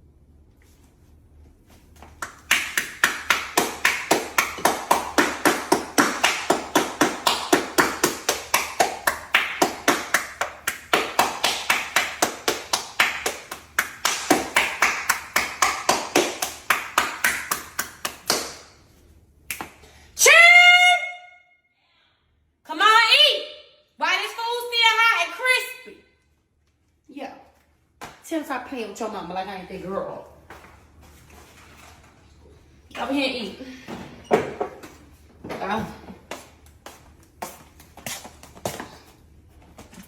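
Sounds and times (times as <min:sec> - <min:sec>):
hands clapping: 0:02.1 - 0:18.7, 0:19.5 - 0:19.8.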